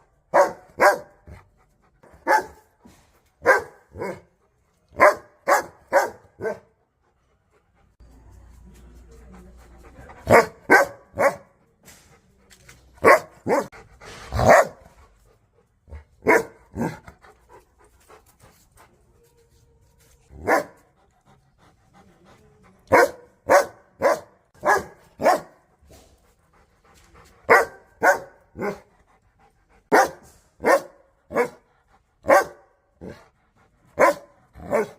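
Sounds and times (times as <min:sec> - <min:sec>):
dog barking aggressively: 0:00.3 - 0:01.4, 0:02.2 - 0:02.7, 0:03.4 - 0:04.3, 0:05.0 - 0:06.7, 0:10.3 - 0:11.4, 0:13.0 - 0:13.7, 0:14.3 - 0:14.9, 0:16.2 - 0:17.0, 0:22.9 - 0:25.6, 0:27.5 - 0:28.8, 0:29.9 - 0:31.6, 0:32.2 - 0:33.2, 0:34.0 - 0:34.9.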